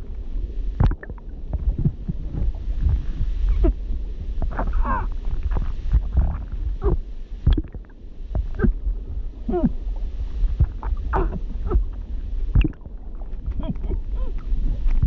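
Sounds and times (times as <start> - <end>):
bubbling: 0.0 - 15.0
constant low rumble: 0.0 - 15.0
woman gurgling cries: 9.5 - 9.8, 11.1 - 11.9, 13.5 - 14.4.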